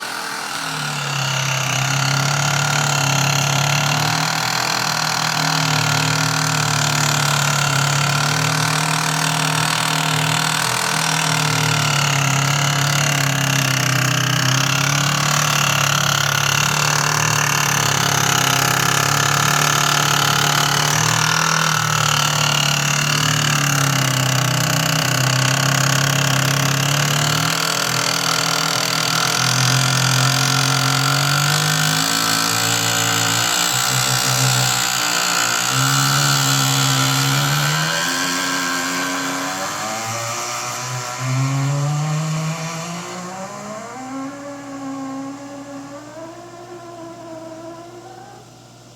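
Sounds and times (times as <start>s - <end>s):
ice maker grinding: 0.0s - 42.2s.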